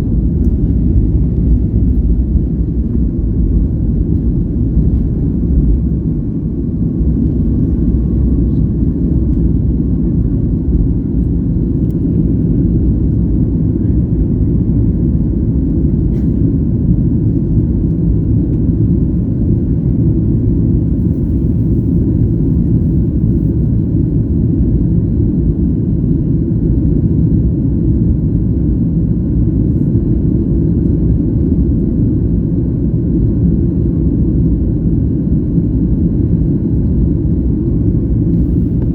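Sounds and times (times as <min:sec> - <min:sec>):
air rushing along fuselage: 0:00.0 - 0:24.7, 0:34.6 - 0:38.9
jet engines at high thrust: 0:00.0 - 0:38.9.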